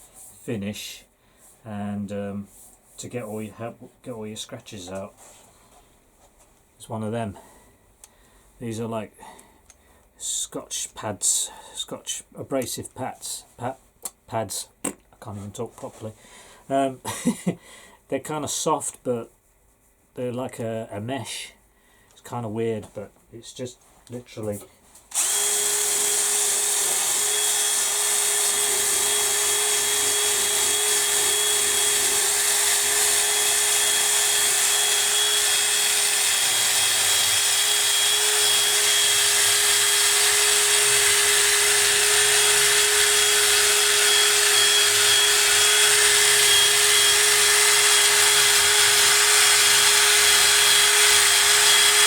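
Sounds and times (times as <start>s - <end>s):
power drill motor whine: 25.1s - 52.0s
abrasive pads rasping on wood: 25.4s - 52.0s.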